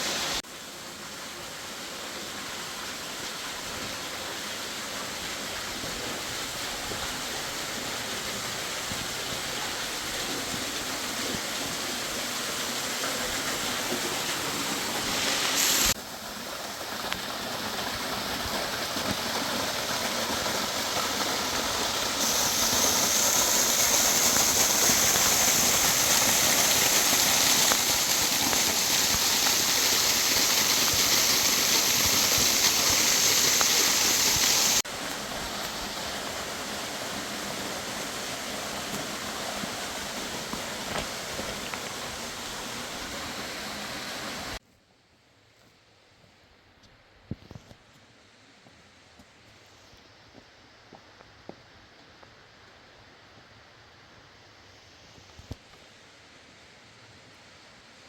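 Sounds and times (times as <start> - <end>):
river water rushing: 4.8 - 44.6.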